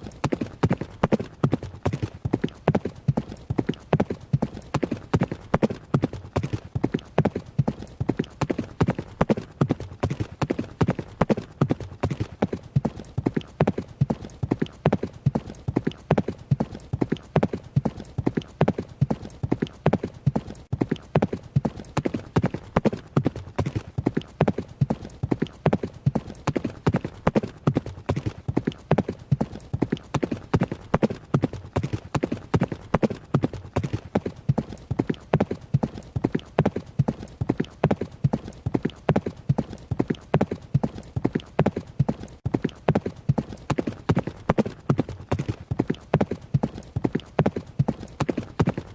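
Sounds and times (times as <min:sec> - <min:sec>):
horse hooves running: 0:00.0 - 0:48.9.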